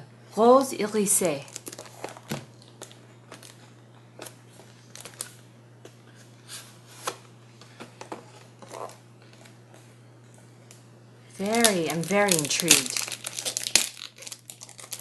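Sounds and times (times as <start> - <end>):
low electrical hum: 0.0 - 15.0
cardboard and paper rustling: 11.4 - 15.0.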